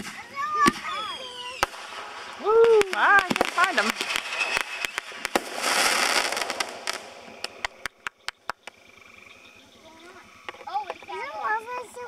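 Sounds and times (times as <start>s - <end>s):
fireworks popping and cracking: 0.0s - 8.8s
fireworks crackling hiss: 0.0s - 9.2s.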